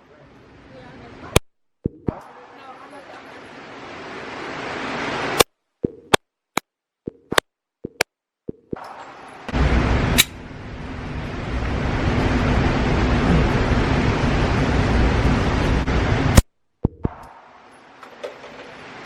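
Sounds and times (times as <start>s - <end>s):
loud low rumbling: 9.5s - 16.4s.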